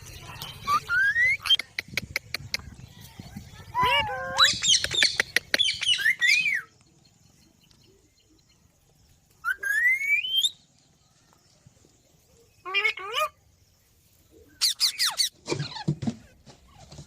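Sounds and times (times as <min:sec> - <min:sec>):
parrot chirping and squawking: 0:12.6 - 0:13.4, 0:14.6 - 0:15.9.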